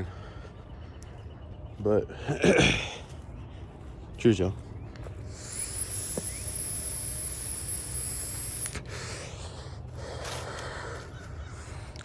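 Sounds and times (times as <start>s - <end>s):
vape draw hiss with whistle: 5.3s - 8.9s.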